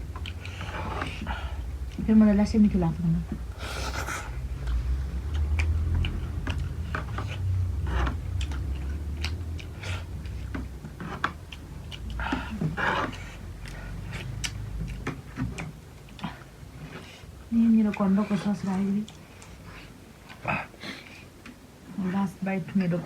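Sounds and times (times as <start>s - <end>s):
low rumble: 0.0s - 15.3s
chewing and crunching food: 0.0s - 21.8s.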